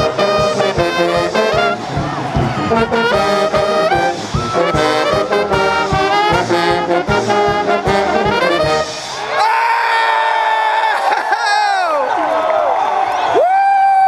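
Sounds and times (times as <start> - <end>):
steady drum beat: 0.0 - 9.2
pep band brass tune: 0.0 - 9.4.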